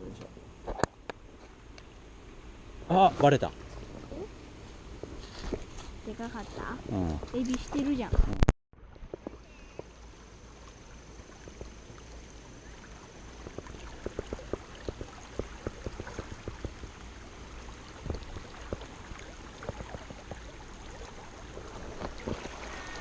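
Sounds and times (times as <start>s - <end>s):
river water running and splashing: 8.8s - 23.0s.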